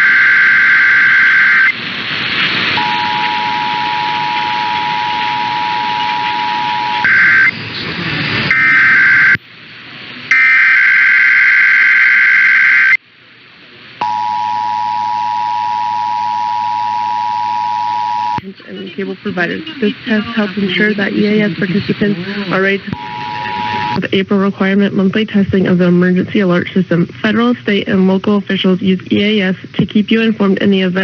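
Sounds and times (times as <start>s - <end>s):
radio static: 0.0s - 9.4s, 10.3s - 13.0s, 15.1s - 31.0s
digital header bursts: 2.8s - 7.5s
two-tone attention signal: 2.8s - 7.5s, 8.5s - 9.4s, 14.0s - 18.4s, 22.9s - 24.0s.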